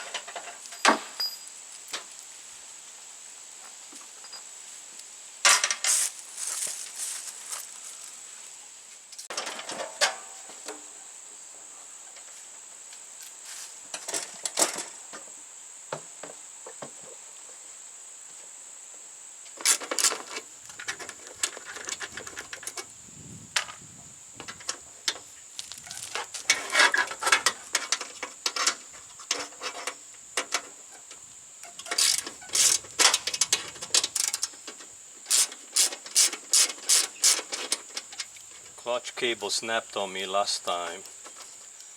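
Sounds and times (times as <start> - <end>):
hand tools clicking and rattling: 19.6 - 22.9, 25.8 - 38.8.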